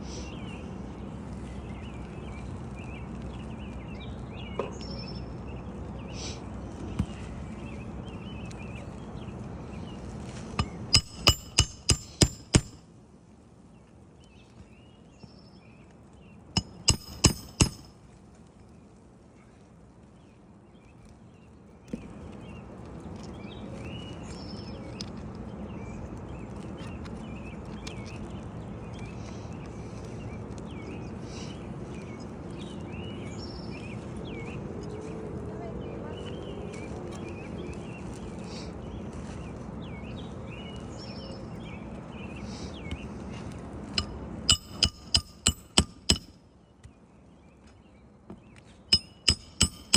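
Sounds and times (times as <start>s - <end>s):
hammer striking metal tool: 10.6s - 12.8s, 16.6s - 17.9s, 44.0s - 46.3s, 48.9s - 49.9s.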